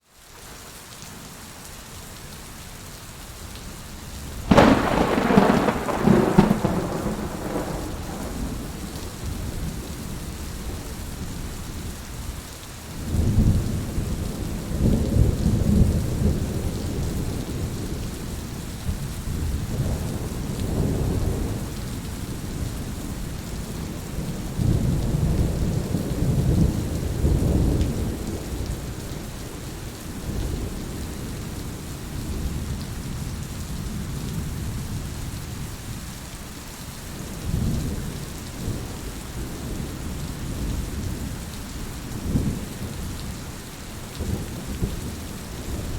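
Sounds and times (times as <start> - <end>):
steady rain in forest: 0.0 - 45.9
rolling thunder: 4.5 - 11.6.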